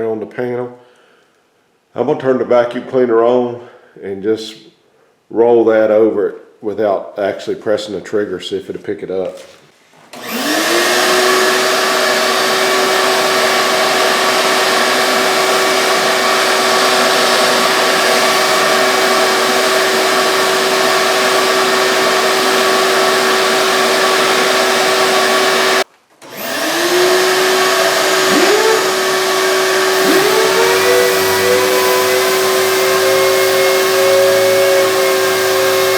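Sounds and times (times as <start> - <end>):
vacuum cleaner running: 10.2 - 35.9.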